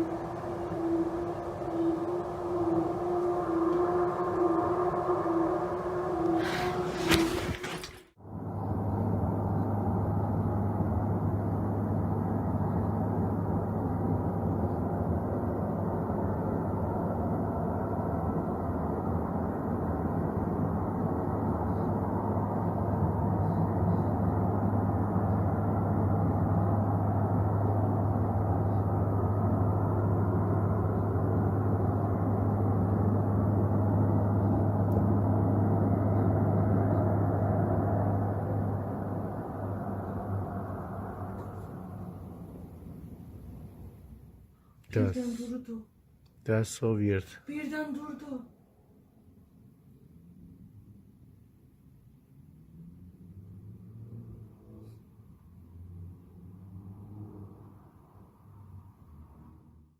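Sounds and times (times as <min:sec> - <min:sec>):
low droning hum: 0:00.0 - 0:44.6.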